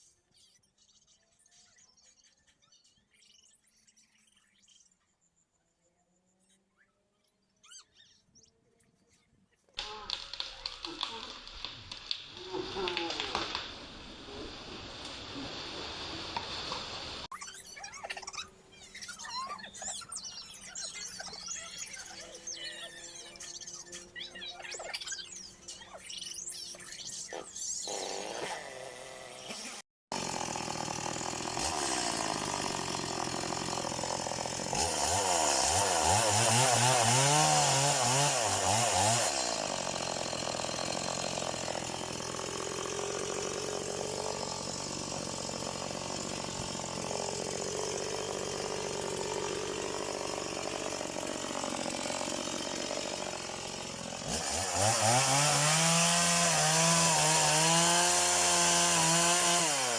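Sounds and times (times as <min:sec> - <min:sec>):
chainsaw idling and revving: 0:09.8 - 0:14.6, 0:27.9 - 0:59.9.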